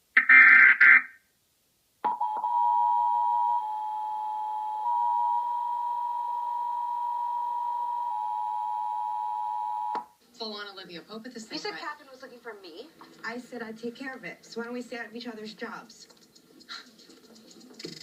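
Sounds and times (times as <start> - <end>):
steady two-tone attention signal: 2.1 - 10.0.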